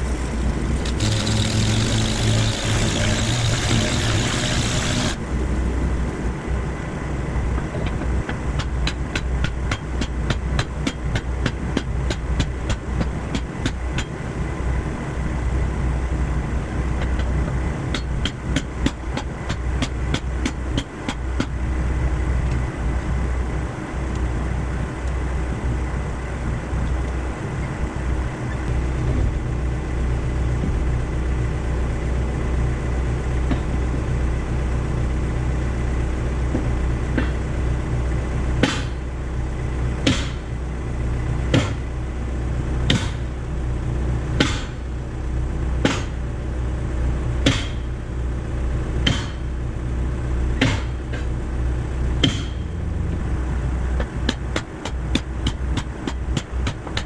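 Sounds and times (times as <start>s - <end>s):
fast regular clicks: 0.0s - 5.2s
motor humming: 0.0s - 5.8s.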